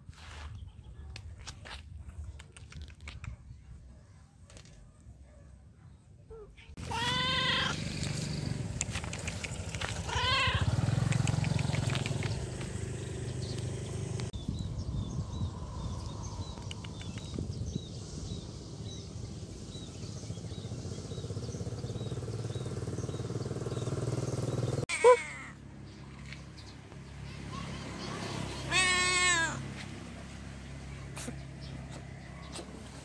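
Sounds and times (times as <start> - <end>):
cat meowing: 6.8 - 7.8, 10.0 - 10.7, 28.7 - 29.6
steady low rumble: 11.9 - 21.1.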